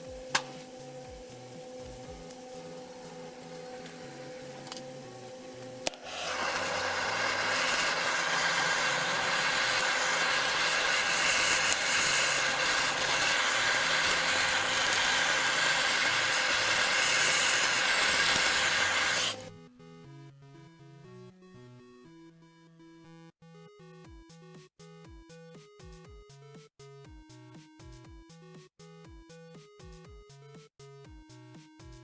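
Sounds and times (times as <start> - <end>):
microwave oven whirring: 0.0 - 19.5
quiet background music: 0.0 - 32.0
microwave click: 0.3 - 0.8.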